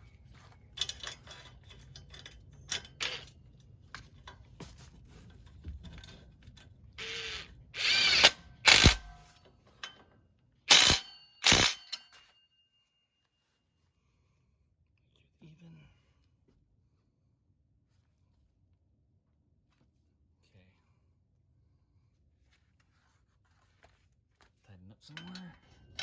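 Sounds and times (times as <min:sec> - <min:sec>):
ratchet wrench clicking: 0:07.0 - 0:09.1, 0:10.7 - 0:12.1.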